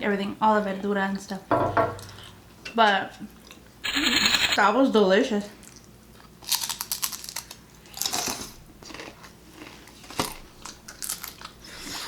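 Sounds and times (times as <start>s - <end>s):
chewing crunchy food: 5.6s - 12.0s.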